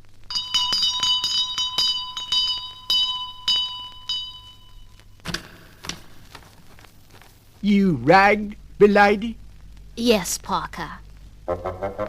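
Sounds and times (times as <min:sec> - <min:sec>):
small bell ringing: 0:00.3 - 0:05.0.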